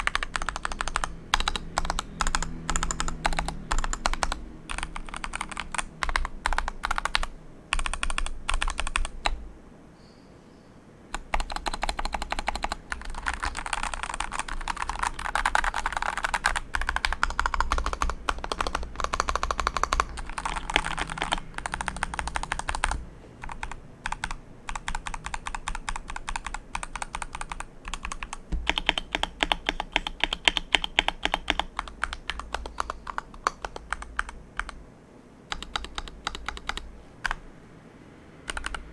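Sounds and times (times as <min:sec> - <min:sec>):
mechanical keyboard typing: 0:00.0 - 0:09.5, 0:11.1 - 0:34.8, 0:35.5 - 0:37.5, 0:38.5 - 0:38.9.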